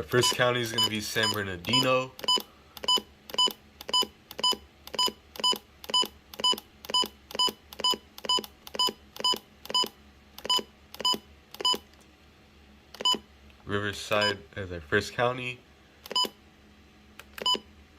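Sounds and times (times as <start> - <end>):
radio button beeps: 0.2 - 11.8, 16.1 - 16.4.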